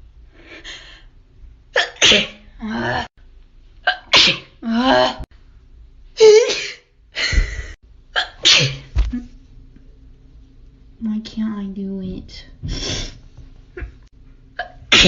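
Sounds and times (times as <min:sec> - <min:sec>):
woman sneezing: 0:01.8 - 0:02.4, 0:03.9 - 0:05.2, 0:06.2 - 0:06.8, 0:08.2 - 0:09.2, 0:14.6 - 0:15.0.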